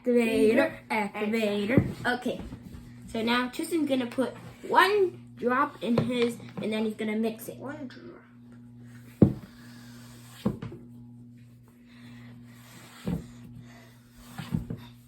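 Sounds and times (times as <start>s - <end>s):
steady low hum: 0.0s - 15.0s
objects knocking and clunking: 9.1s - 9.6s.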